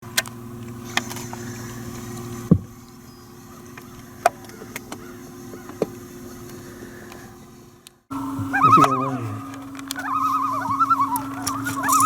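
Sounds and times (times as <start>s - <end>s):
low hum: 8.1s - 12.0s
water lapping: 8.2s - 12.0s.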